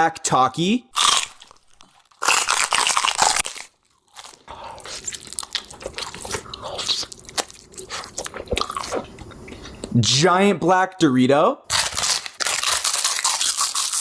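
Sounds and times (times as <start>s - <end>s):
chip crunching: 1.0s - 9.0s, 11.7s - 14.0s
chewing crunchy chip: 1.0s - 9.8s, 11.7s - 14.0s.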